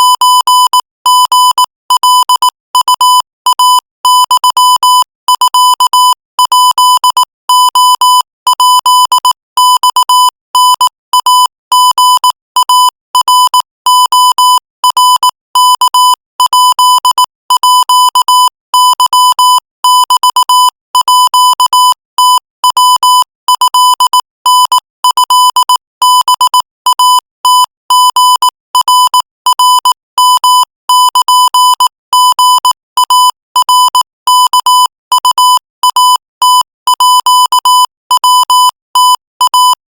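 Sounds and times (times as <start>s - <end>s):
morse code beeps: 0.0s - 39.8s.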